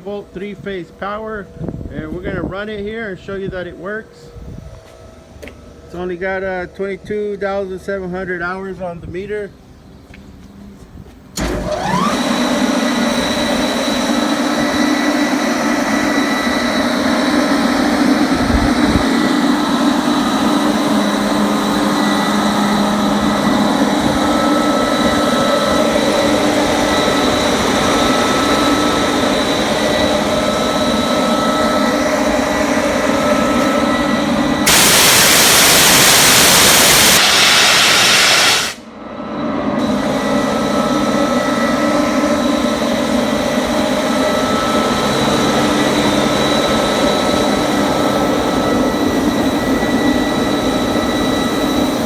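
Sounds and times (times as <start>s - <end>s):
air compressor humming: 9.6s - 52.0s
rushing air hiss: 34.6s - 38.9s.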